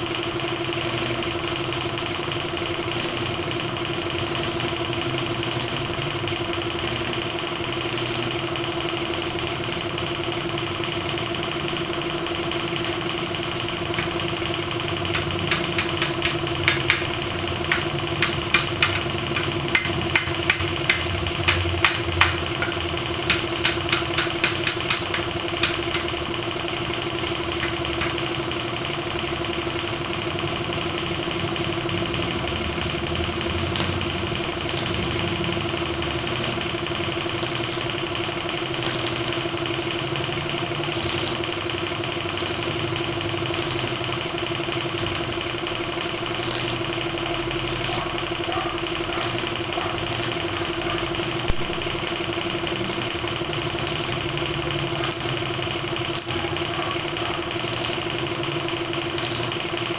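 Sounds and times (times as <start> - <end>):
steady machine hum: 0.0 - 59.9
sharp taps or knocks: 15.1 - 17.1, 17.7 - 26.2.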